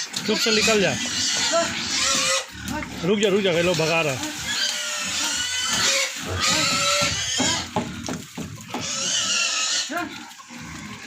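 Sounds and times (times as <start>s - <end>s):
pigs grunting: 0.0s - 11.0s
pigs squealing: 0.0s - 11.0s
knocks: 6.5s - 8.8s.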